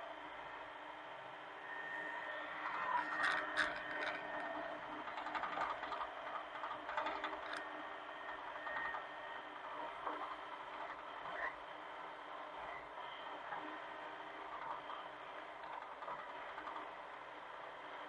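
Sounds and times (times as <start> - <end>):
excavator engine running: 1.8 - 18.0
mechanical clatter: 2.7 - 9.0.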